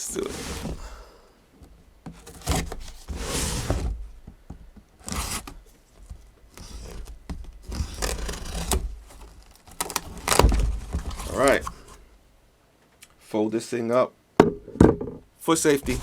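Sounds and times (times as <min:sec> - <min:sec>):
knife slitting cardboard box: 0:00.0 - 0:01.1, 0:02.2 - 0:04.0, 0:05.0 - 0:05.6, 0:06.5 - 0:12.0, 0:15.7 - 0:16.0.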